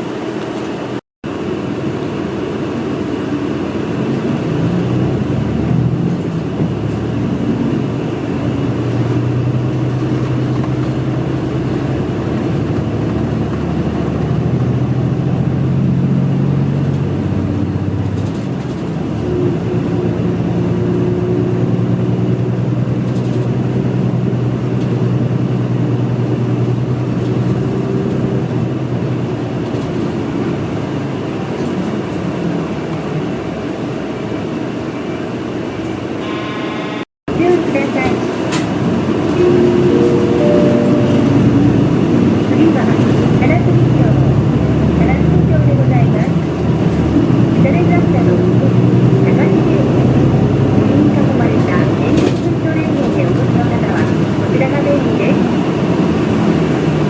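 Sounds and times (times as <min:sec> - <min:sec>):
bus engine running: 0:00.0 - 0:57.0.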